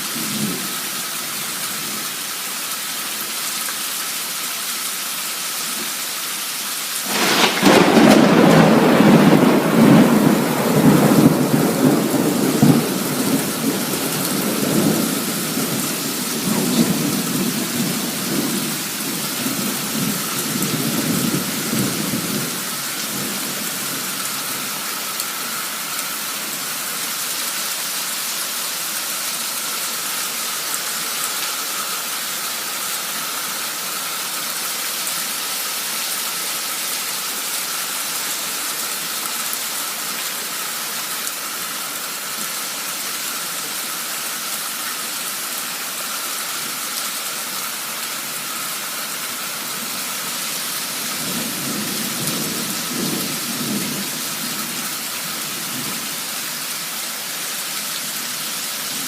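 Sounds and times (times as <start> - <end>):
heavy rain pouring: 0.0 - 59.0
thunder rumbling: 7.1 - 24.8, 51.0 - 54.9.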